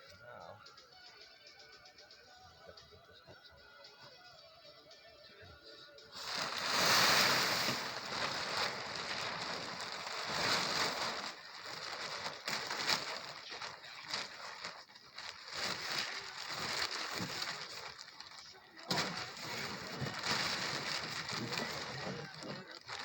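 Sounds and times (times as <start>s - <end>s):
wet snow and ice crunching: 6.2s - 14.4s.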